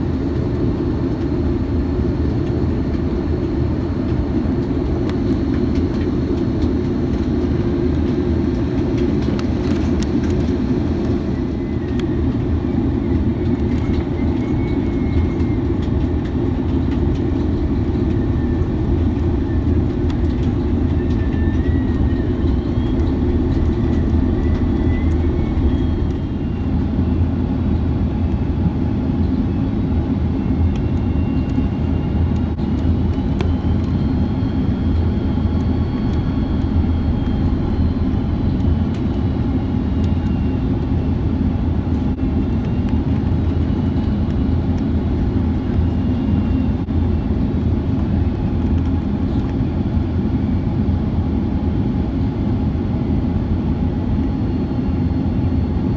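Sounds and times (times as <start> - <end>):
jet engine and airflow roar: 0.0 - 55.9
high engine tones: 11.8 - 28.5, 32.6 - 41.2.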